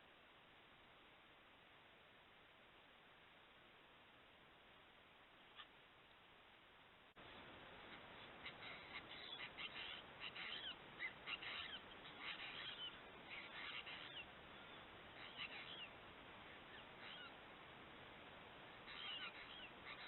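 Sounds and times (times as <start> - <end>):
steady background hiss: 0.0 - 20.0
birds chirping and calling: 7.9 - 17.4, 18.8 - 20.0.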